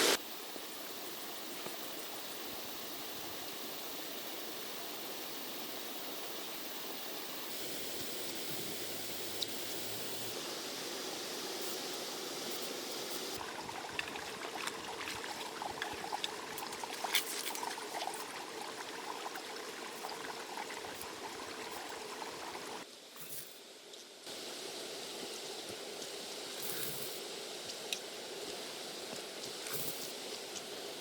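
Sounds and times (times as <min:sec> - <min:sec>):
small splashes and ticks: 0:13.4 - 0:22.8
water trickling: 0:13.4 - 0:22.8.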